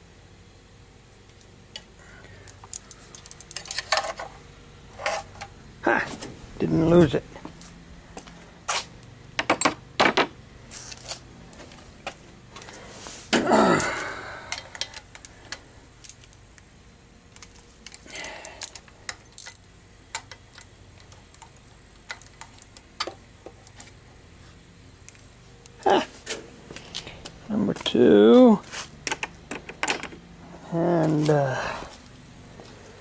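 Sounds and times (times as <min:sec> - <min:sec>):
metal tools clinking and rattling: 0:02.5 - 0:04.3, 0:09.4 - 0:10.3.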